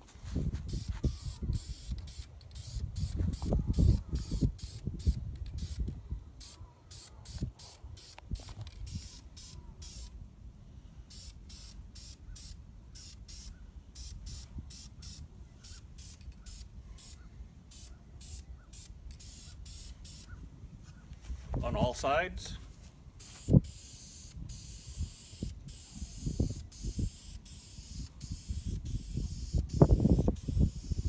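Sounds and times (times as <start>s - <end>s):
aerosol spray hissing bursts: 0.7s - 5.8s, 23.2s - 31.0s.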